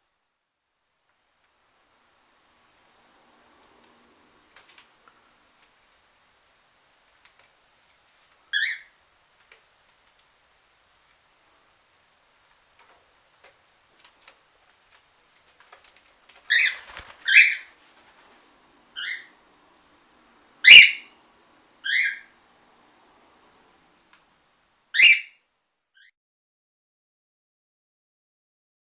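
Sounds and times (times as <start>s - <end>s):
cockatiels calling: 8.5s - 9.0s, 16.4s - 17.8s, 18.9s - 19.4s, 20.6s - 21.2s, 21.8s - 22.4s, 25.0s - 25.3s
faint clicks: 9.4s - 10.4s.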